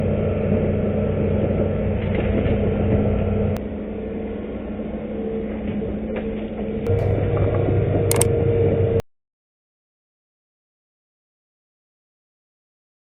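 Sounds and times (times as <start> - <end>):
sharp click: 6.9 - 7.2
excavator diesel engine running: 6.9 - 9.0.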